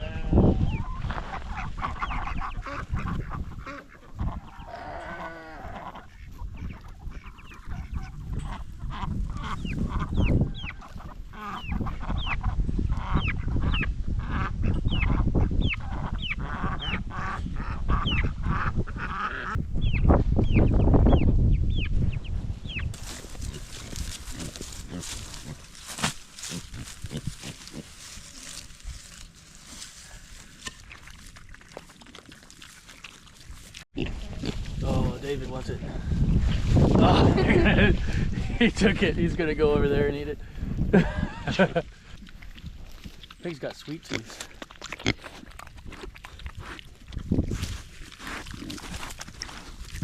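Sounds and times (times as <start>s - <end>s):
chicks peeping: 0.6s - 4.7s, 6.0s - 29.0s
fowl honking calls: 0.8s - 10.3s.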